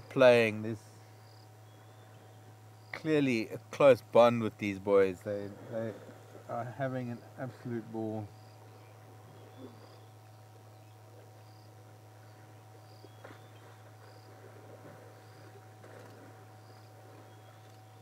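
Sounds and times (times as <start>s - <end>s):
steady low hum: 0.0s - 18.0s
insect chirping: 1.0s - 3.1s, 7.1s - 18.0s.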